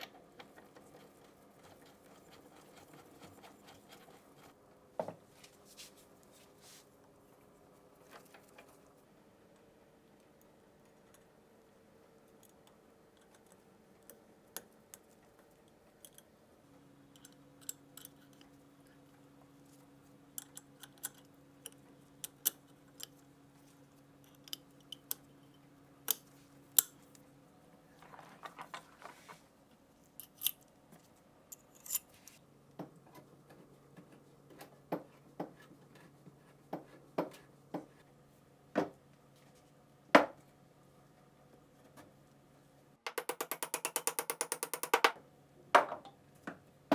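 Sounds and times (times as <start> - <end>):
faint steady hum: 0.0 - 46.9
metal parts clicking and knocking: 43.1 - 45.2.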